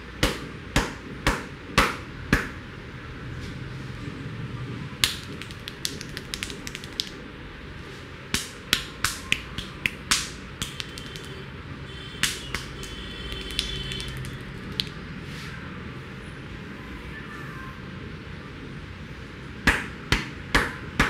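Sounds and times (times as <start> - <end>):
hands slapping on head: 5.0 - 7.2, 8.3 - 11.4, 12.2 - 15.0.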